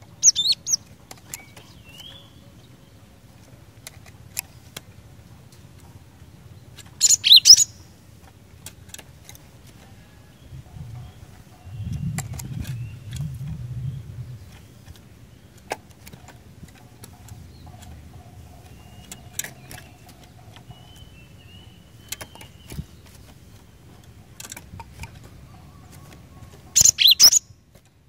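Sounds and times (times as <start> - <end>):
bird sharp clicks: 0.2 - 2.2, 6.8 - 7.8, 25.9 - 27.5
bird whistling thin notes: 7.0 - 7.7, 26.8 - 27.5
low rumble: 10.5 - 14.6.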